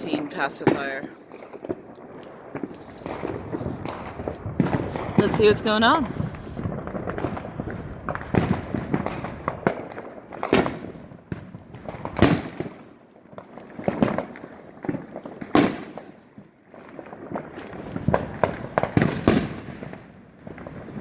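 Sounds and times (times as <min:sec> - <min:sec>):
firework bangs: 0:00.0 - 0:12.8, 0:13.4 - 0:21.0
firecrackers crackling: 0:00.0 - 0:21.0.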